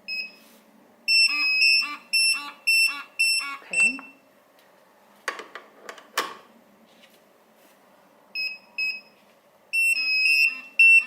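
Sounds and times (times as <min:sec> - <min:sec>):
pager beeping: 0:01.1 - 0:04.2, 0:09.8 - 0:11.0.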